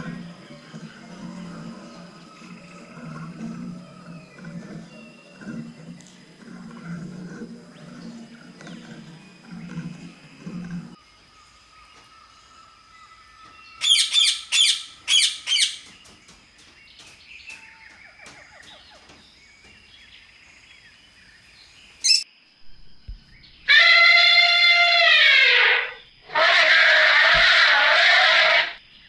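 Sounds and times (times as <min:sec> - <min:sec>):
faint bird chirps: 0:11.1 - 0:25.0
bird calling harshly: 0:13.8 - 0:15.9, 0:22.0 - 0:22.2, 0:23.6 - 0:28.8.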